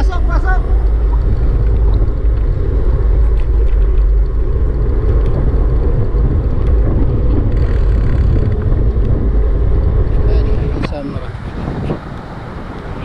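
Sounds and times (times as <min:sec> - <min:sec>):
car road and wind noise: 0:00.0 - 0:13.0.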